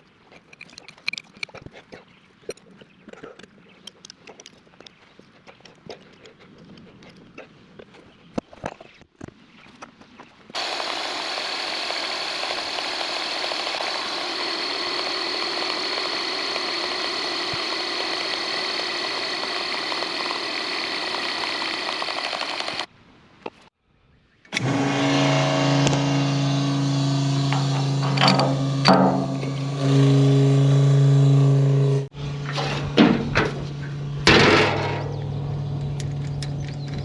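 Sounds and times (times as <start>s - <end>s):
diesel engine with high whine: 10.6s - 22.9s, 24.6s - 37.0s
deep steady drone: 24.6s - 32.6s.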